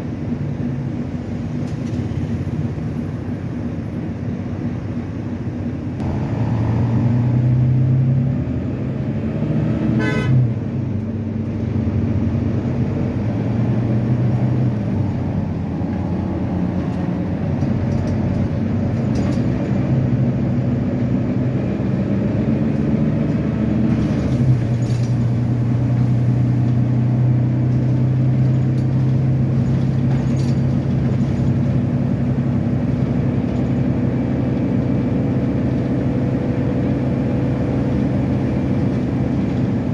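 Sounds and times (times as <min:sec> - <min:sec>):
diesel bus engine running: 0:00.0 - 0:39.9
short high horn toot: 0:10.0 - 0:10.4.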